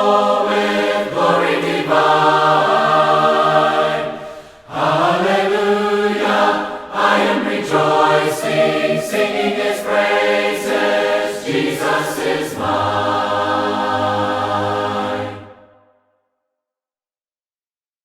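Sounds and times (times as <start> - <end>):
voices singing a hymn a cappella: 0.0 - 15.7.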